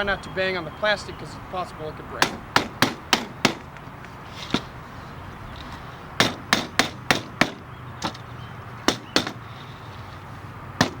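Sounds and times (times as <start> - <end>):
hammer knocking on aluminium: 2.2 - 3.7, 6.2 - 8.2, 8.9 - 9.4, 10.8 - 11.0.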